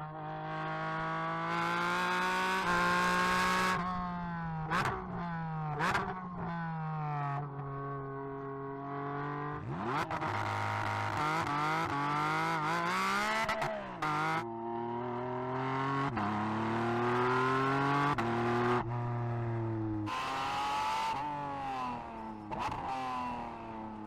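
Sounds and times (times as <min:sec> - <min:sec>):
racing car engine: 0:08.8 - 0:24.0.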